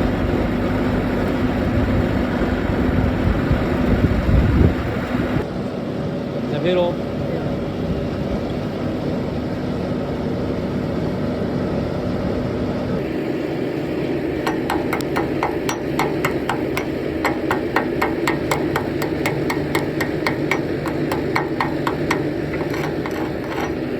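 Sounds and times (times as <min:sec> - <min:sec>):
steady machine hum: 0:00.0 - 0:23.9
metal hammer strikes: 0:14.4 - 0:23.9.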